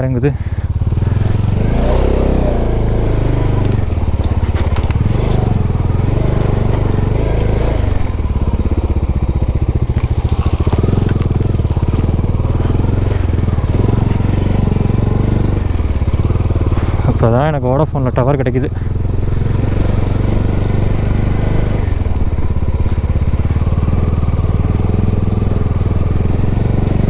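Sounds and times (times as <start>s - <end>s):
motorcycle engine at low revs: 0.0s - 27.0s
tyres crunching over loose stones: 0.8s - 16.9s
rocks knocking under bike: 3.4s - 14.9s.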